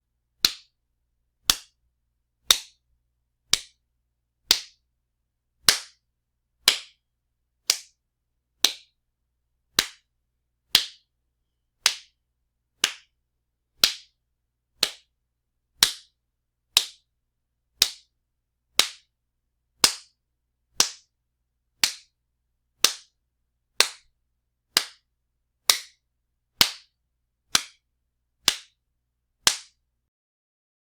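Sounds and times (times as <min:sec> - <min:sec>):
loud wet slaps: 0:29.5 - 0:29.7.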